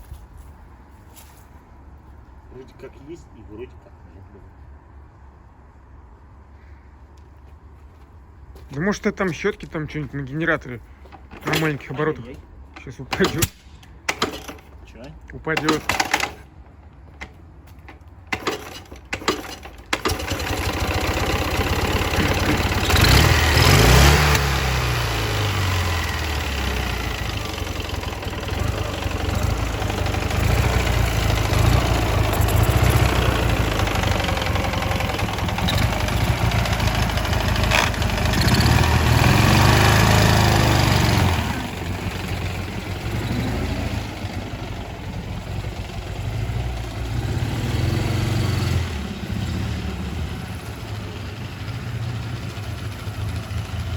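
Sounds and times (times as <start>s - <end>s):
motorcycle engine idling and revving: 15.6s - 53.9s.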